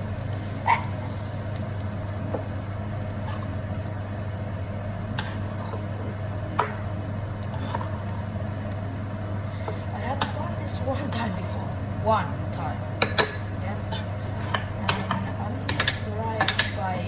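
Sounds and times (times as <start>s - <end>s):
low mechanical hum: 0.0s - 17.0s
utensil clicking against pan: 14.5s - 16.8s.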